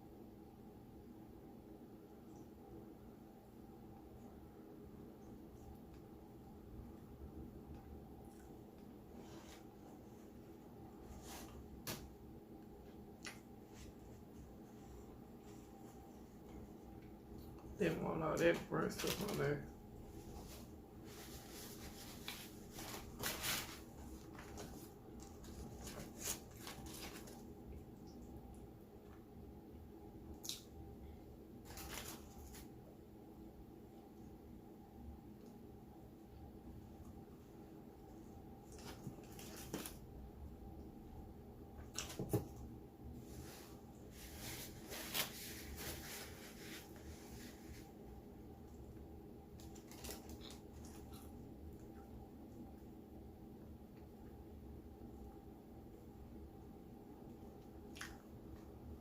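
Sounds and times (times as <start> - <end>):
crackly food handling: 18.4 - 29.3, 31.5 - 33.0, 37.0 - 40.4, 41.7 - 52.9
chewing: 57.9 - 58.3.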